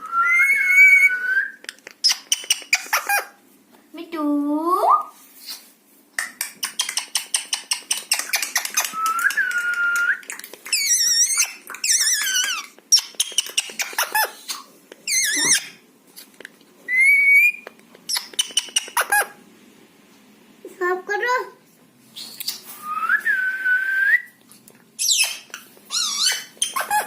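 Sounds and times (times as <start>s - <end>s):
parrot whistle: 0.0s - 2.5s, 16.9s - 18.7s
parrot squawks and squeaks: 2.0s - 3.4s, 6.3s - 8.9s, 10.2s - 15.8s, 17.0s - 19.4s, 25.0s - 27.0s.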